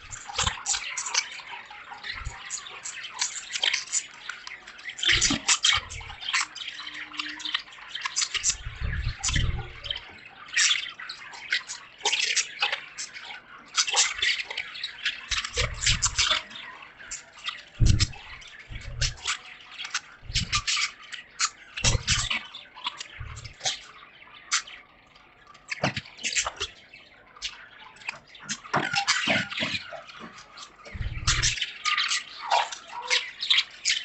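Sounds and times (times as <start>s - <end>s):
budgies chirping: 0.0s - 34.0s
dull low thumps: 8.6s - 9.9s, 17.8s - 19.2s, 20.2s - 20.6s, 23.2s - 23.5s, 31.0s - 31.6s.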